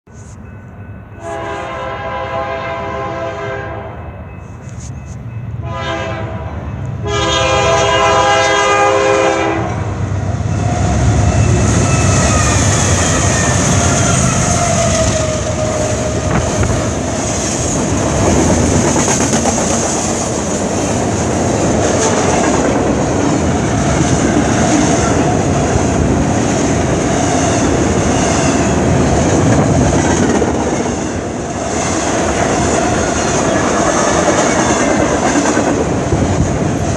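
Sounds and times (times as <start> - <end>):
train passing rumble: 0.1 - 36.9
locomotive air horn blasts: 1.2 - 4.0, 5.6 - 9.9
wheels clattering on rails: 11.8 - 23.2.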